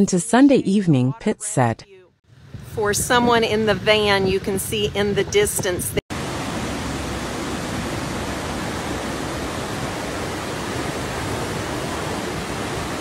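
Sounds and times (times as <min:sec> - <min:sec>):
floodwater rushing: 0:02.7 - 0:13.0.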